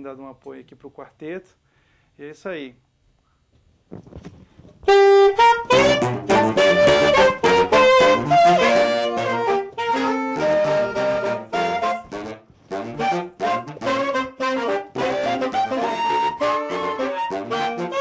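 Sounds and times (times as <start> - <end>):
saxophone quartet playing: 4.9 - 18.0.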